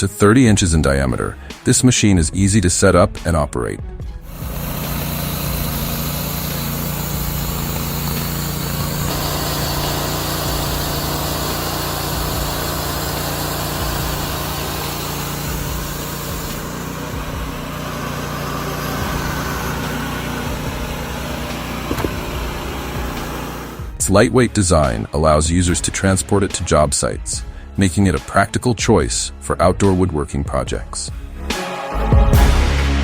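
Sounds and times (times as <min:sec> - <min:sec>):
sawmill engine running under load: 0:04.2 - 0:24.0.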